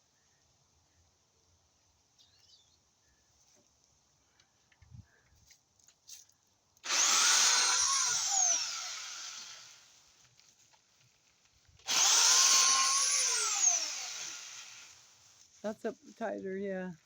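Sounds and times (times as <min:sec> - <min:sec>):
pole chainsaw motor whining: 0:06.8 - 0:09.9, 0:11.9 - 0:15.1.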